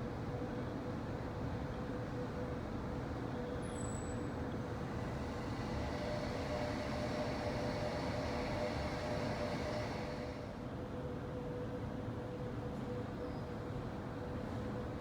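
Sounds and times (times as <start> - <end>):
faint motor whine: 0.6 - 15.0
monorail travel rush: 4.4 - 11.3.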